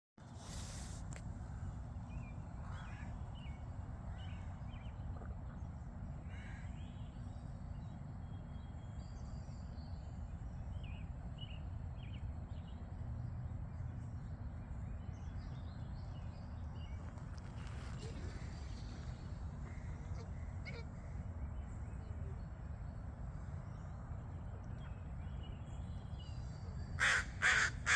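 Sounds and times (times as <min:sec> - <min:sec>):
birds giving short calls: 0:27.0 - 0:27.9.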